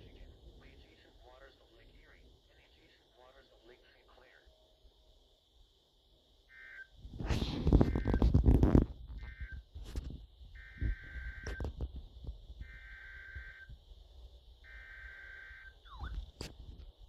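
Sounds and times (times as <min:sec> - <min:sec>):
raspy digital data bursts: 0:10.6 - 0:11.8, 0:12.6 - 0:13.8, 0:14.6 - 0:16.3.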